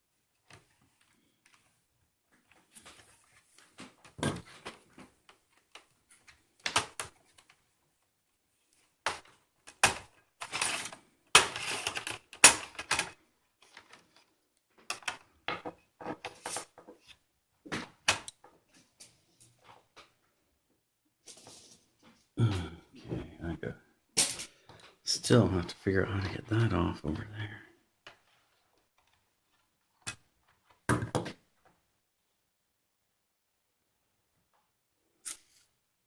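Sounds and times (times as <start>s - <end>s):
plastic parts clicking and snapping: 3.8s - 7.6s, 9.0s - 17.2s.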